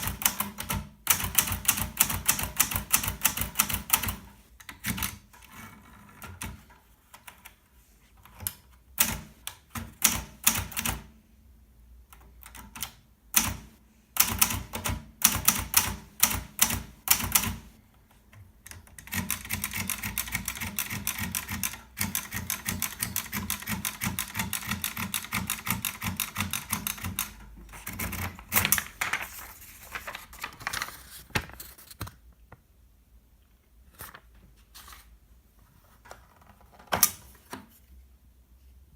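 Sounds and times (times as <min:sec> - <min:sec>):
typewriter keystrikes: 0:00.0 - 0:05.3, 0:09.0 - 0:11.1, 0:12.4 - 0:17.7, 0:18.7 - 0:29.2.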